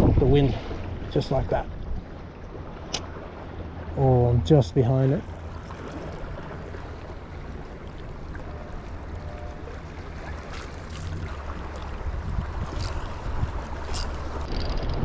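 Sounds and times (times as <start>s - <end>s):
wind rumbling on microphone: 0.0s - 2.2s, 6.3s - 15.0s
waves washing: 0.0s - 15.0s.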